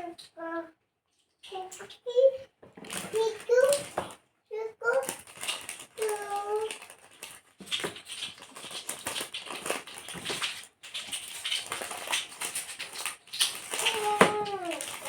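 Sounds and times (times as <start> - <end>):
packaging rustling and crinkling: 2.6 - 4.2, 4.8 - 15.0.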